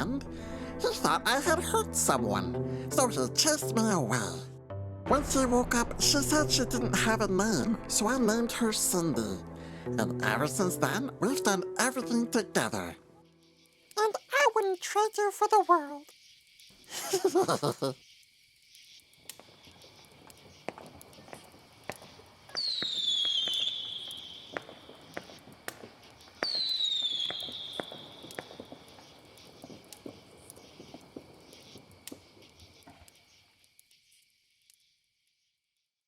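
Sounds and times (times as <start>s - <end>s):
whistling firework bursts: 16.0s - 34.9s
crackling firework pops: 18.0s - 34.8s.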